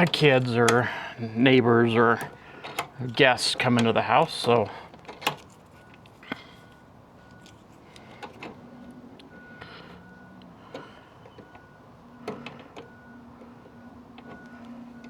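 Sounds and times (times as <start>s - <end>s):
clicks of gate latch hardware: 0.0s - 0.9s, 1.9s - 6.5s.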